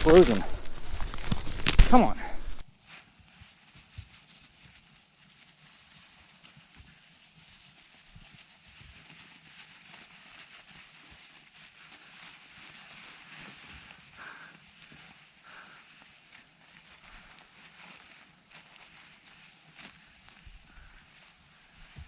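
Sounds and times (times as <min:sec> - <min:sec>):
crunching of icy snow: 0:00.0 - 0:02.6.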